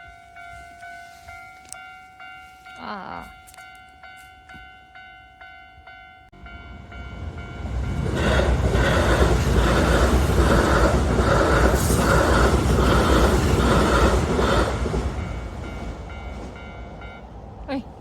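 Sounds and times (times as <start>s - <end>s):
railway crossing bell ringing: 0.0s - 18.0s
train passing: 0.0s - 18.0s
train wheels clattering over rail joints: 7.9s - 16.6s.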